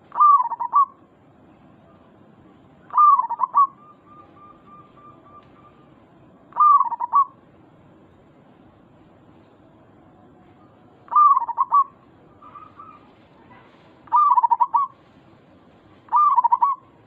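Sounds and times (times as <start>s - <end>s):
dove cooing: 0.0s - 1.0s, 2.9s - 7.4s, 11.1s - 15.0s, 16.1s - 17.0s.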